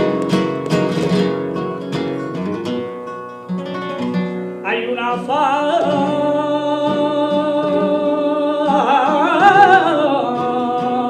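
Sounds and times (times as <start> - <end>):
acoustic guitar: 0.0 - 11.0
person singing long melisma: 4.6 - 11.0.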